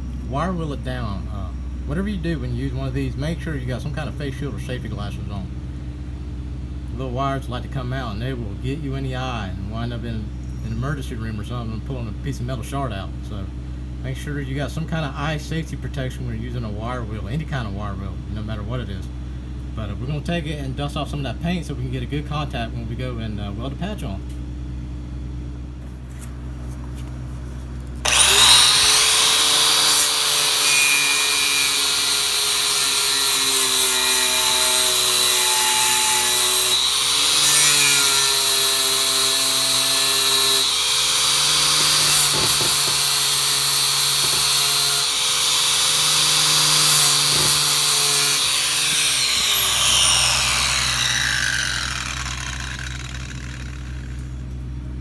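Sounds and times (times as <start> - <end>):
wire wheel scrubbing metal: 28.0 - 54.2.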